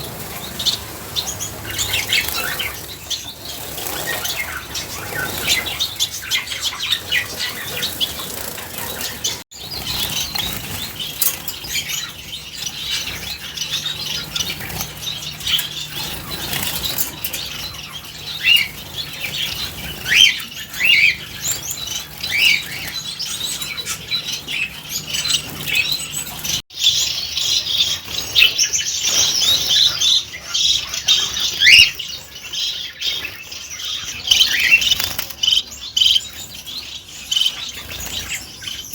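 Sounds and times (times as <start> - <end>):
wings fluttering and splashing water: 34.0 - 35.7.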